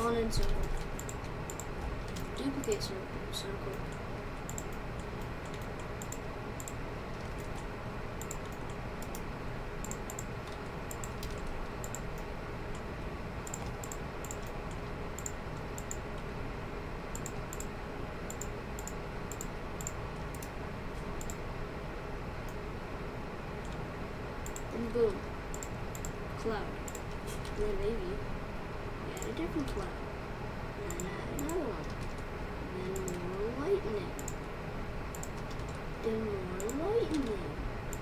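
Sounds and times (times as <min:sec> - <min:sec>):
keyboard keys clicking: 0:00.2 - 0:02.8, 0:03.7 - 0:16.3, 0:30.9 - 0:34.5, 0:35.1 - 0:35.9, 0:36.6 - 0:38.0.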